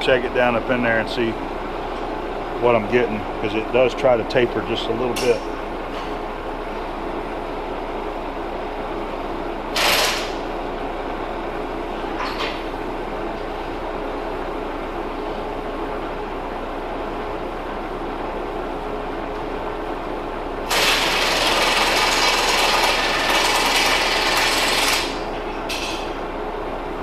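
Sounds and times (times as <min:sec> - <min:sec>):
machine shop equipment hum: 0:00.0 - 0:27.0.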